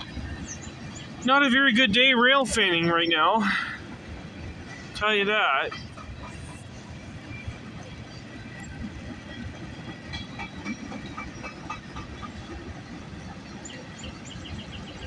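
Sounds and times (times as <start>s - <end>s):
freight train rumbling past: 0.0s - 15.0s
light clicks on rails: 5.7s - 14.8s.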